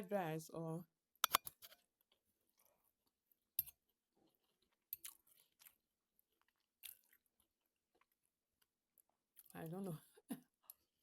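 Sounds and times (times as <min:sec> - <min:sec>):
faint chewing with wet mouth clicks: 0:03.0 - 0:09.6.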